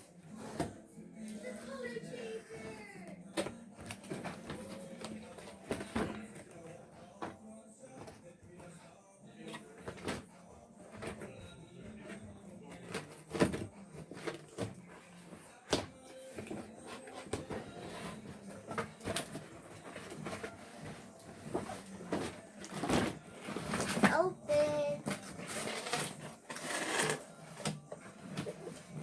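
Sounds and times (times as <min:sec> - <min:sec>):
toy packaging rustling and clicking: 0:17.2 - 0:28.6.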